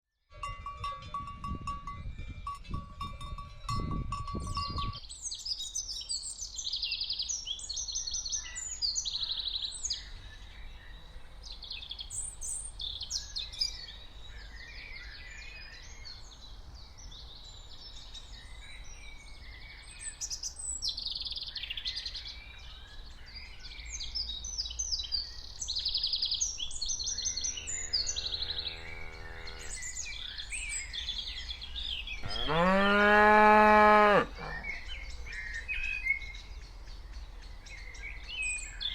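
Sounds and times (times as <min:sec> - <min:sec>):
birds singing and chirping: 0:04.3 - 0:38.9
cow mooing: 0:27.4 - 0:29.9, 0:32.2 - 0:34.8.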